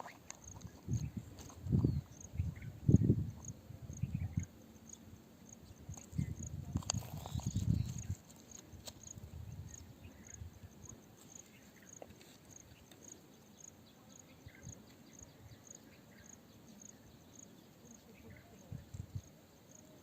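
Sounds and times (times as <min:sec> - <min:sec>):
faint insect chirping: 0:00.0 - 0:20.0.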